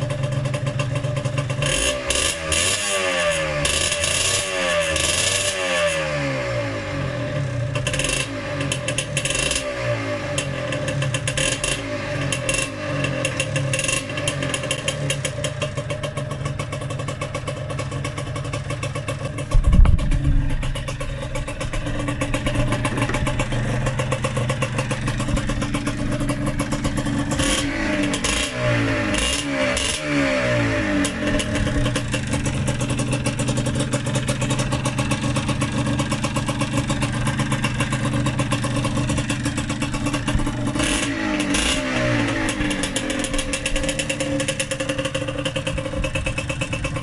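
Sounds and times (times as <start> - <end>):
two-stroke engine revving: 0.0 - 47.0
loud low thud: 19.4 - 23.6.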